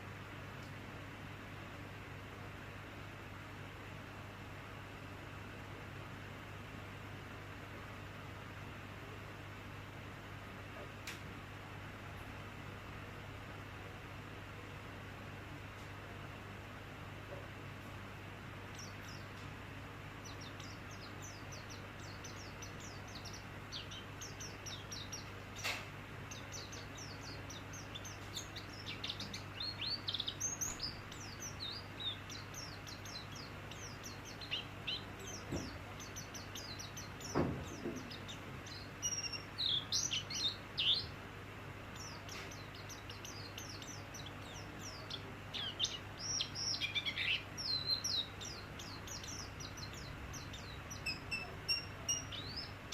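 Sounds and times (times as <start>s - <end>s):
steady low hum: 0.0s - 52.9s
bird chirping and twittering: 18.7s - 19.5s, 20.2s - 41.2s, 41.9s - 52.9s
faint knocks: 37.3s - 38.2s.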